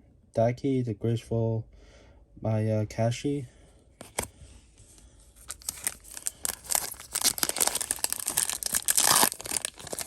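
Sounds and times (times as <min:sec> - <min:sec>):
foil wrapper tearing and crinkling: 0:05.4 - 0:10.0.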